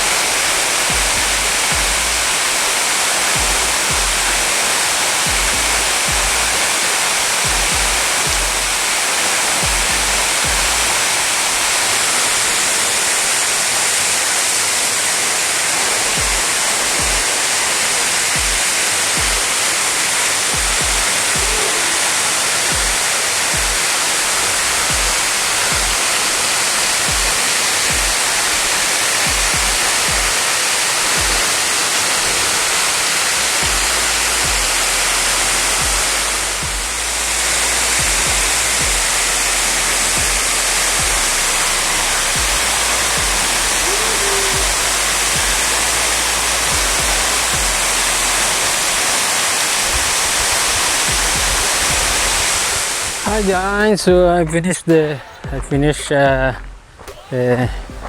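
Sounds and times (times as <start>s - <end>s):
waterfall rushing: 0.0s - 58.0s
low thumps: 0.8s - 2.4s, 3.3s - 4.6s, 5.2s - 6.7s, 7.4s - 9.0s, 9.6s - 11.0s, 16.2s - 17.3s, 18.4s - 19.6s, 20.5s - 21.7s, 22.7s - 24.0s, 24.6s - 26.1s, 27.0s - 30.5s, 33.5s - 48.7s, 49.9s - 58.0s
low thuds: 0.9s - 2.4s, 3.4s - 4.6s, 5.2s - 6.6s, 7.4s - 9.0s, 9.6s - 11.0s, 17.0s - 17.3s, 18.4s - 18.6s, 19.2s - 19.5s, 20.5s - 21.6s, 22.7s - 23.8s, 24.6s - 26.0s, 27.1s - 28.6s, 29.2s - 30.4s, 33.6s - 48.5s, 49.9s - 58.0s.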